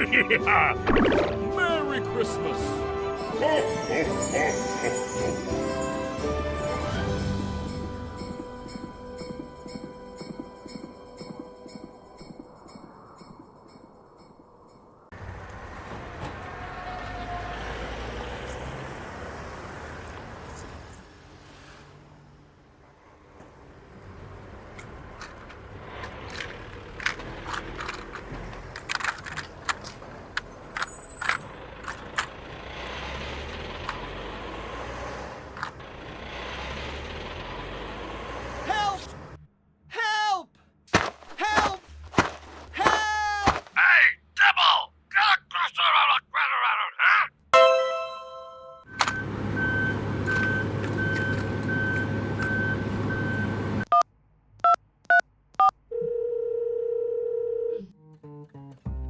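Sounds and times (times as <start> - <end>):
truck engine running: 24.4 - 38.6, 48.9 - 53.9.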